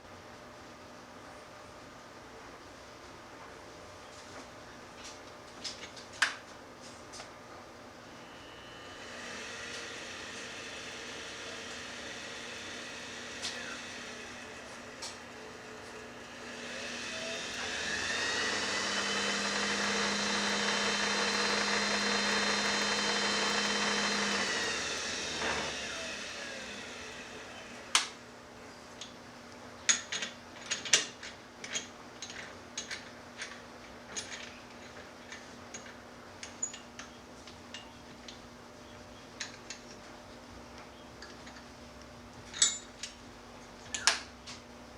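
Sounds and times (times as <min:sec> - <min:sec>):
wood lathe motor whine: 0:08.1 - 0:28.2.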